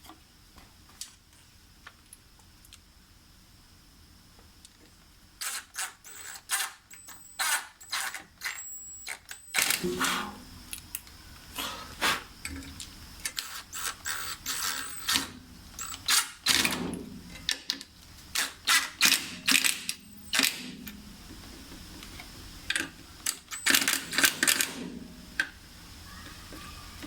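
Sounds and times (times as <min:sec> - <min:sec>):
small parts clicking and knocking: 0:04.6 - 0:09.8, 0:12.4 - 0:20.6.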